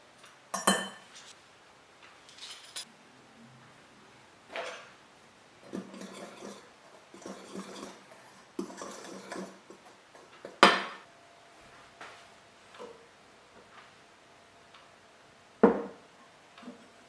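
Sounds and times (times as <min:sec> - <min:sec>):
metal clink on bowl: 0:00.5 - 0:01.1
utensil stirring in mixing bowl: 0:05.6 - 0:10.6.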